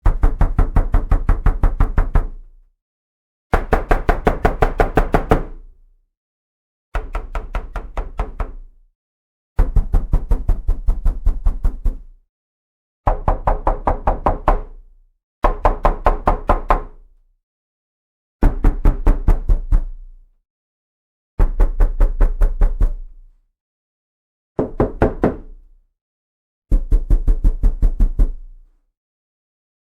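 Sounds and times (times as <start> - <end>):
knuckles knocking on wooden door: 24.6 - 25.6.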